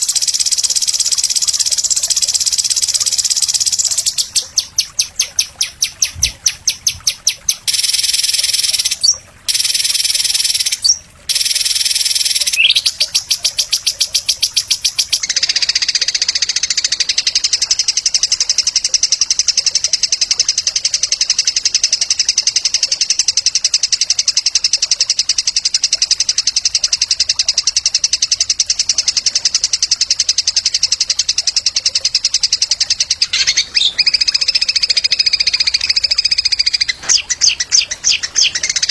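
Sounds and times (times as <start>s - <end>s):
songbird trilling: 0.0s - 20.0s, 30.3s - 38.9s.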